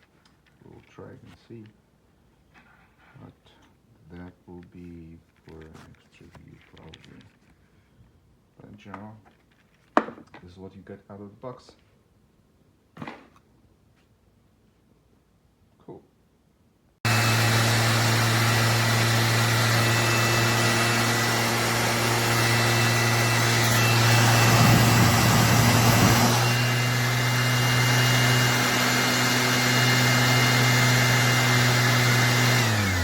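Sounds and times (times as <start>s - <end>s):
orbit sander running: 17.0s - 33.0s.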